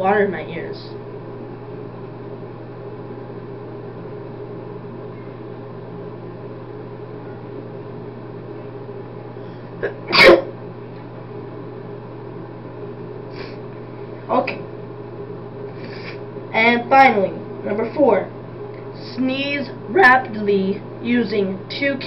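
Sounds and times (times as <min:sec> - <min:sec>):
low room hum: 0:00.0 - 0:22.0
man sneezing loudly: 0:10.1 - 0:10.5.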